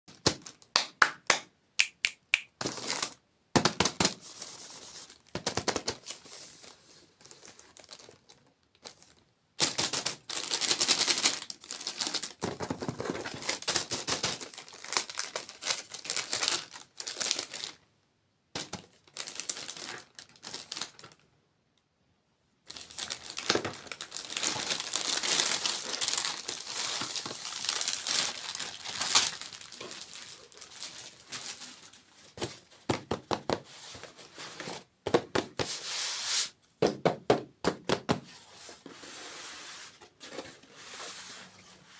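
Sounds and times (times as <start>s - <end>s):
crinkling and crunching while eating: 22.7s - 32.7s.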